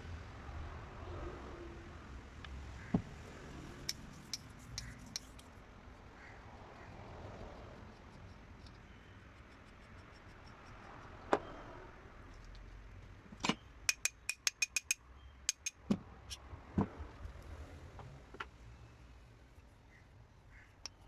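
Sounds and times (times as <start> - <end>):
ringing metallic clicks: 13.5 - 15.8.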